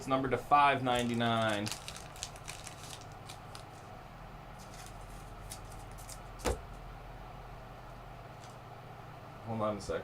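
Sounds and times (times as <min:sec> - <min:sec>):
trading cards rustling and clicking: 0:01.0 - 0:03.9, 0:04.6 - 0:06.3.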